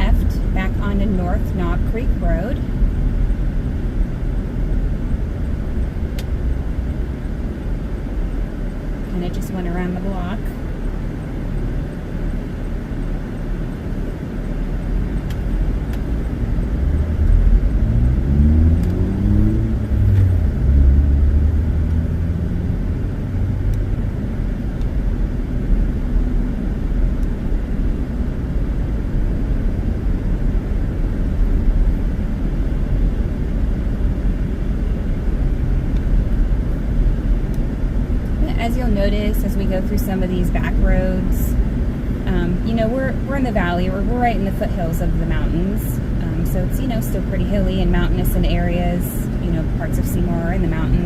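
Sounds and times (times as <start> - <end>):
car engine: 0.0 - 51.0
tyre noise on road: 10.6 - 51.0.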